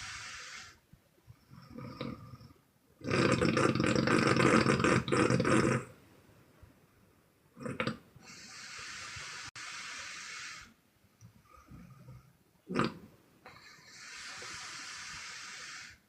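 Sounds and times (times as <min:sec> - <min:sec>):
snort: 0:01.5 - 0:05.9, 0:07.6 - 0:10.8, 0:11.5 - 0:16.0.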